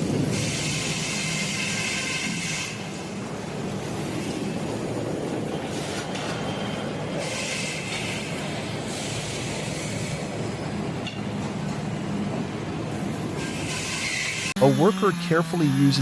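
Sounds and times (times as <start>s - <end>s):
sawmill machinery din: 13.0s - 16.0s
saw blade whine: 13.4s - 16.0s.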